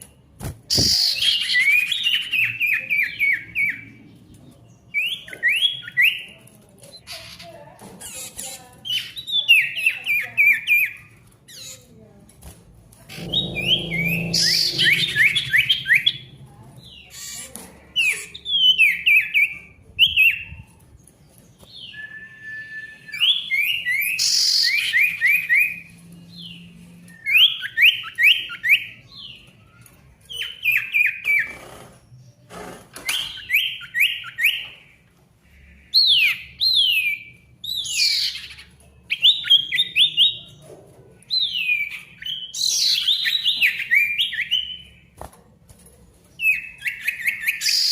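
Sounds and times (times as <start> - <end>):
songbird whistling: 21.8 - 25.8.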